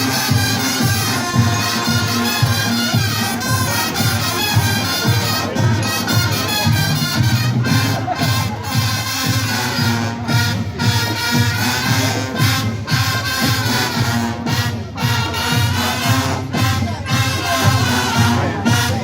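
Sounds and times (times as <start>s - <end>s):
brass band chords: 0.0s - 19.0s
steady drum beat: 0.0s - 19.0s.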